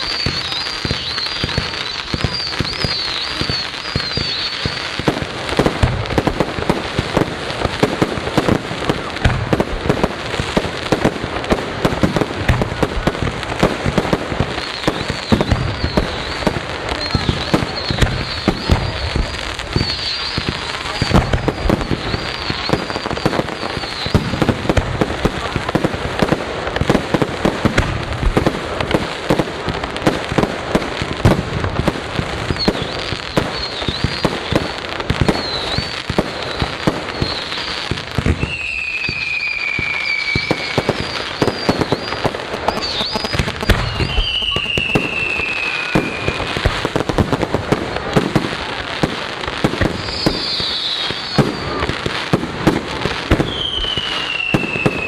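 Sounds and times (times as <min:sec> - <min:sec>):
falling firework whistles: 0:00.0 - 0:07.3, 0:13.8 - 0:25.6, 0:31.2 - 0:55.0
fireworks bangs and crackling: 0:00.0 - 0:55.0.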